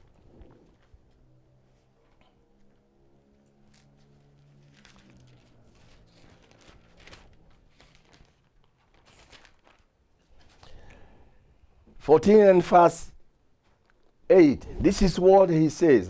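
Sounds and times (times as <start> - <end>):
thin pages rustling: 3.4 - 10.8.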